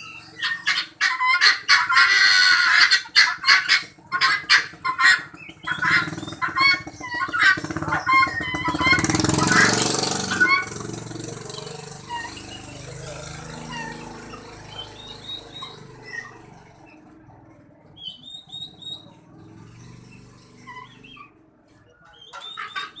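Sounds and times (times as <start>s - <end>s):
chickens chirping: 0.0s - 23.0s
chicken harsh call: 0.3s - 11.0s, 22.3s - 23.0s.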